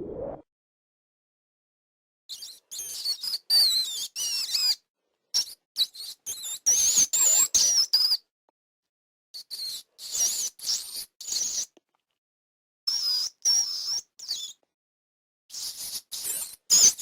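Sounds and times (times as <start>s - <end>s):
rat squeaking: 12.9s - 14.6s.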